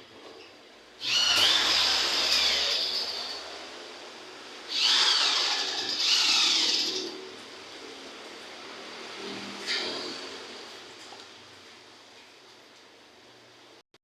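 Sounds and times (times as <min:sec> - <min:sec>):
power tool motor whirring: 0:01.0 - 0:03.5, 0:04.7 - 0:07.2.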